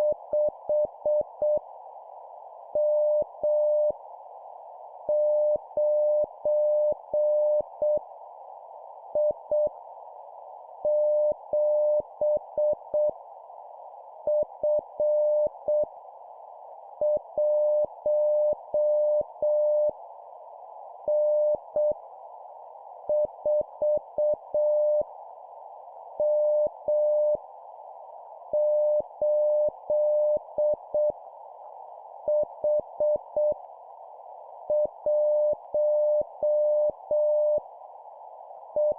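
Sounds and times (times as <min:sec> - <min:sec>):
morse code beeps: 0:34.8 - 0:37.6.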